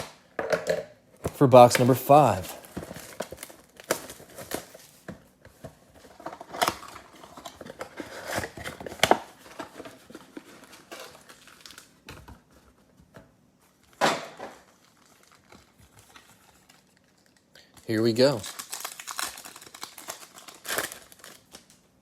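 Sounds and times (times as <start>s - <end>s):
plastic wrap crinkling: 1.5s - 5.1s, 5.9s - 12.5s, 13.7s - 22.0s
sharp tearing rips: 18.2s - 21.7s.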